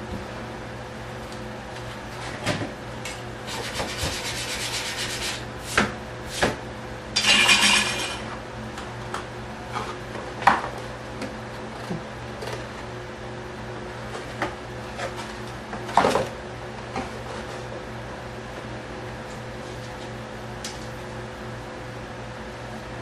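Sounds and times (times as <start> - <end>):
rubbing and scraping foam: 3.5 - 5.4.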